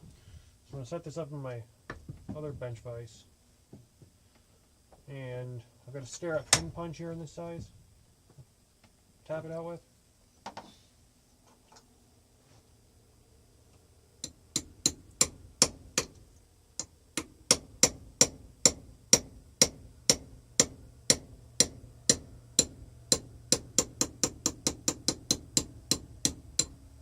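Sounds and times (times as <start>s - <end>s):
hammer tapping steel punch: 14.2s - 16.2s, 16.8s - 26.8s.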